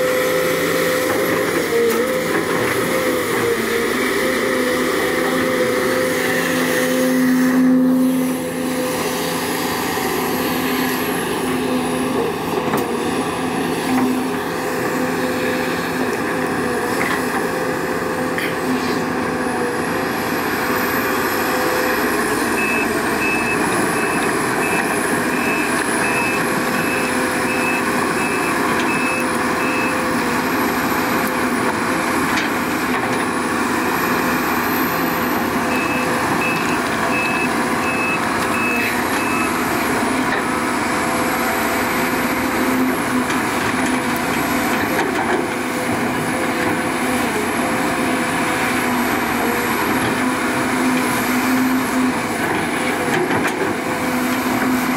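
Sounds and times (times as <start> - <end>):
heavy diesel machinery whining: 0.0 - 54.9
reversing alarm beeping: 22.6 - 30.0, 35.7 - 39.6.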